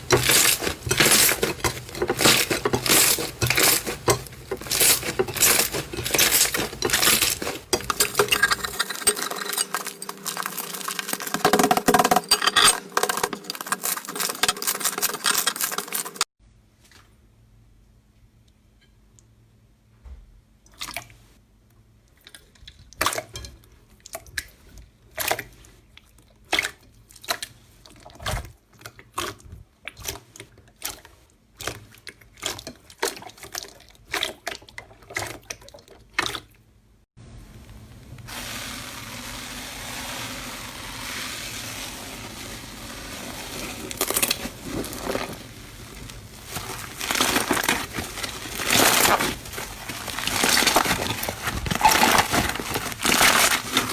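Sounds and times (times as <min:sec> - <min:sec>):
wet squelches of slime: 0:22.0 - 0:36.8, 0:40.5 - 0:53.9
steady hiss: 0:37.6 - 0:46.5.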